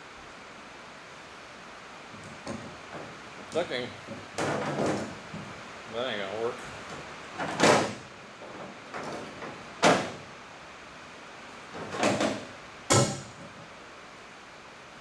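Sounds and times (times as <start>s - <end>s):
scraping knocks on car body parts: 2.2s - 5.6s, 6.9s - 10.3s, 11.7s - 13.6s.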